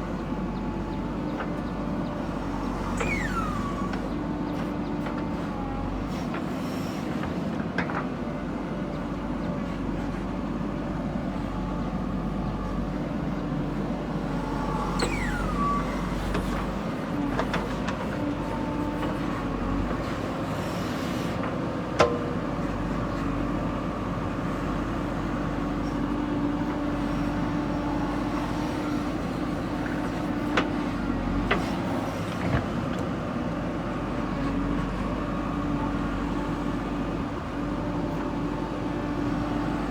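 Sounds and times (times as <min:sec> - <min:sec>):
falling squeal: 0:03.0 - 0:03.9, 0:14.5 - 0:16.6.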